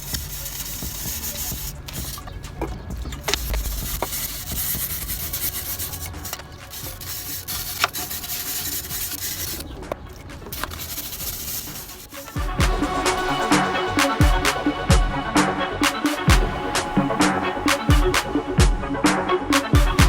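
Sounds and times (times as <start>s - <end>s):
wire brush scrubbing metal: 0.0s - 2.5s, 3.2s - 18.4s.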